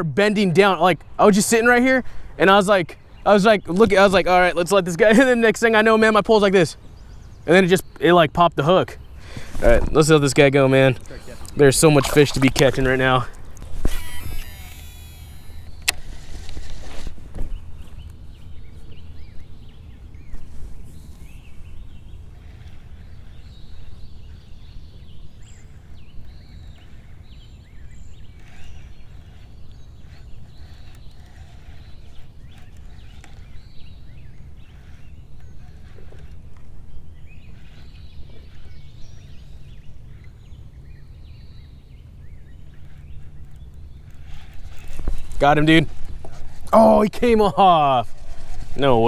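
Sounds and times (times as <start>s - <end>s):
bird calls and chirps: 17.2s - 49.0s.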